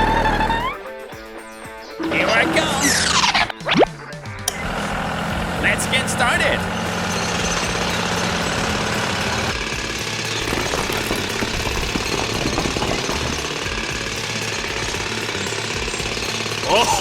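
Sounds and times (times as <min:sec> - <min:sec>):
low motor hum: 0:00.0 - 0:00.8, 0:04.5 - 0:17.0
rapid mechanical hammering: 0:04.5 - 0:17.0.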